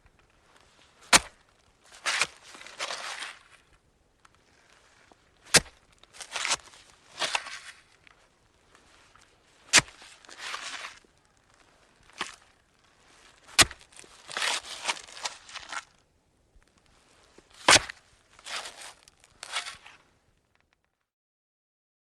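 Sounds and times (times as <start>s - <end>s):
scraping and rustling of earth: 0.0s - 20.8s
garden hoe chopping into soil: 1.0s - 3.5s, 5.4s - 7.8s, 9.7s - 11.1s, 12.1s - 12.5s, 13.4s - 15.9s, 17.5s - 20.0s.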